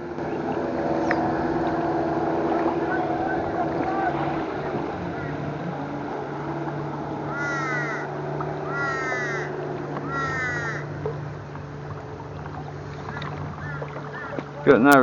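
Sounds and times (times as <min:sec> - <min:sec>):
crow cawing: 0:07.3 - 0:10.9, 0:13.6 - 0:14.4.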